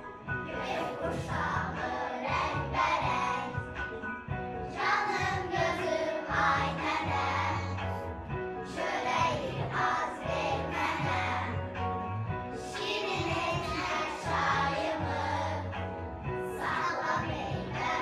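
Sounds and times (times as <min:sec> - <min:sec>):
instrumental accompaniment with bass: 0:00.0 - 0:18.0
children's choir singing: 0:00.6 - 0:03.6, 0:04.7 - 0:07.9, 0:08.6 - 0:11.6, 0:12.6 - 0:15.8, 0:16.5 - 0:18.0.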